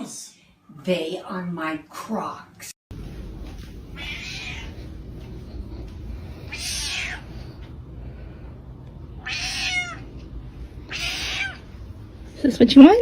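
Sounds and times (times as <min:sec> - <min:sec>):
low background rumble: 0:02.9 - 0:13.0
cat meowing: 0:04.0 - 0:04.8, 0:06.5 - 0:07.6, 0:09.2 - 0:10.1, 0:10.8 - 0:11.8.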